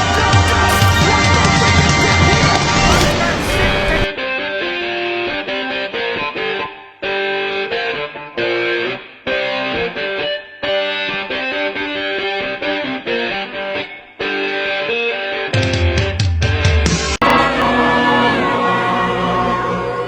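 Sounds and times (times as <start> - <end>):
plucked guitar notes: 0.0 - 4.0.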